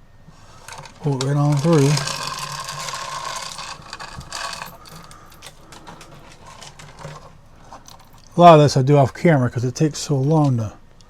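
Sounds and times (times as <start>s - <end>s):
metal chain clicking over sprocket: 0.6s - 8.4s.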